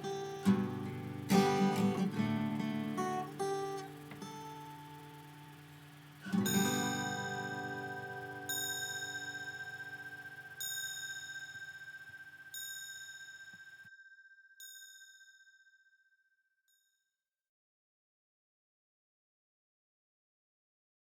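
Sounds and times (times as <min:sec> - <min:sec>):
guitar chord ringing: 0:00.0 - 0:10.7
bell-like chime struck: 0:06.3 - 0:15.4.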